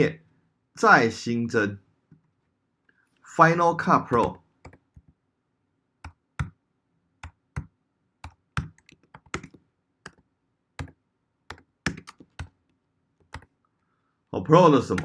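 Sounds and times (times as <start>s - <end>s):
computer keyboard typing: 4.2s - 5.1s, 6.0s - 6.6s, 7.2s - 10.2s, 10.8s - 12.6s, 13.2s - 13.5s.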